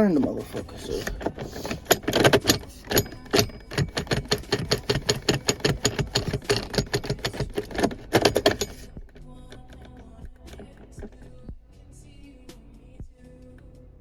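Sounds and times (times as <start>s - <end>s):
socket ratchet clicking: 0.4s - 11.5s.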